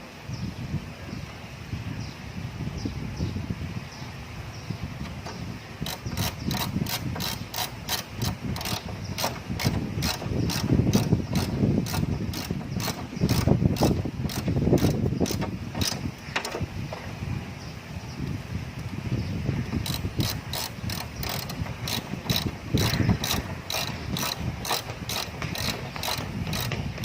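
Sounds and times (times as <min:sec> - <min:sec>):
ratchet wrench clicking: 0:05.2 - 0:16.6, 0:19.7 - 0:27.0.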